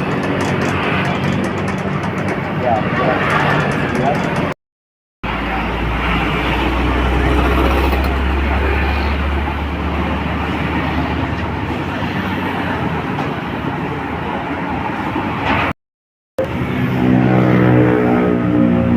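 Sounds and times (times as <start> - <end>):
motorcycle engine: 0.0 - 4.6
road and wind noise: 0.0 - 4.6, 5.2 - 15.8, 16.4 - 18.9.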